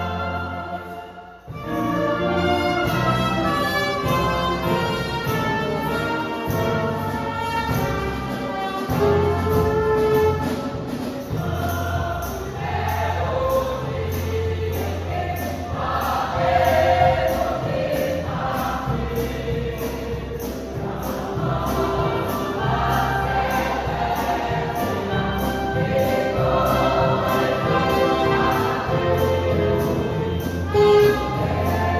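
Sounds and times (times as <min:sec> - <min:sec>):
choir singing a hymn: 0:00.0 - 0:31.9
orchestral accompaniment: 0:00.0 - 0:31.9.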